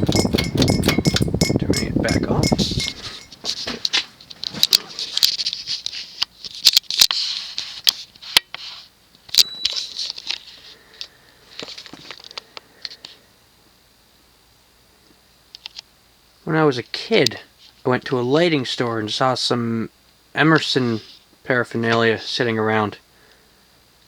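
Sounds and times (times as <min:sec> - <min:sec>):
fan ticking and clicking: 0:00.0 - 0:03.6.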